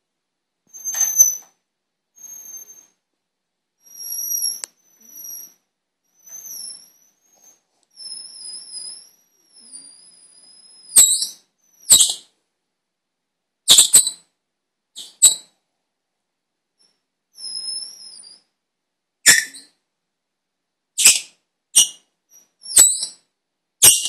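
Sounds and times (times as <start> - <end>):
sharp balloon squeaks: 0.7 - 1.5, 3.9 - 5.6, 6.2 - 12.3, 13.7 - 14.2, 19.2 - 19.7, 21.0 - 22.0, 22.6 - 23.2.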